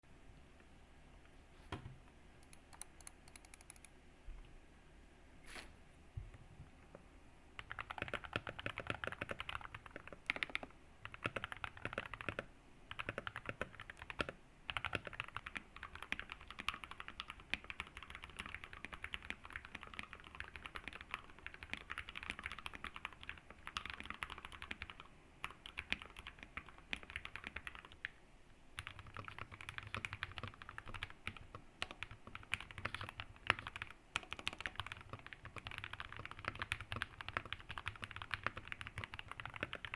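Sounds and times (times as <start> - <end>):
mechanical keyboard typing: 2.4 - 3.9, 7.6 - 28.1, 28.8 - 39.9.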